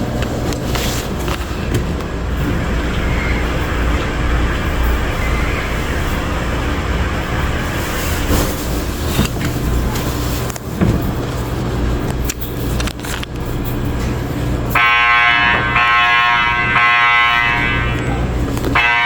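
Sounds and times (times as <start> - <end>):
low rumbling handling noise: 0.0 - 14.9
fire alarm horn buzzing: 2.6 - 8.2, 14.7 - 19.0.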